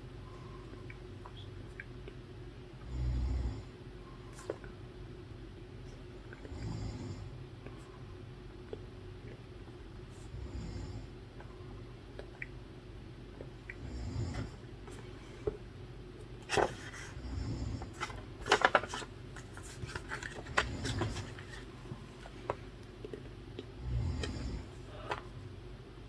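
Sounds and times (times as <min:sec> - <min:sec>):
person snoring: 0:23.8 - 0:25.1.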